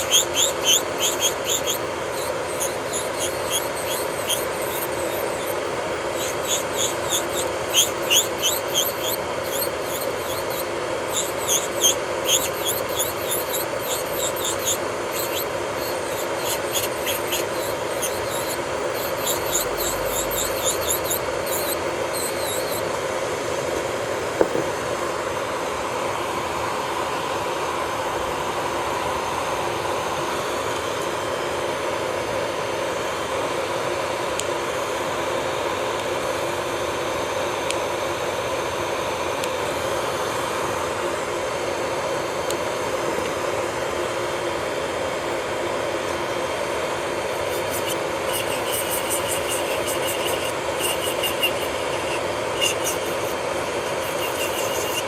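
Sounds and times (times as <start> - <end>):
drill bit grinding fingernail: 0.0 - 23.0, 46.7 - 55.0
electric nail drill humming: 0.0 - 23.6, 46.2 - 55.0.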